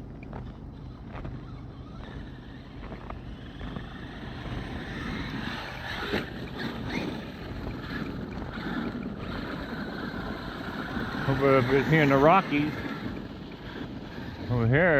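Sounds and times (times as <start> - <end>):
rc truck motor whining: 0.0 - 14.9
steady rushing noise: 1.3 - 14.9.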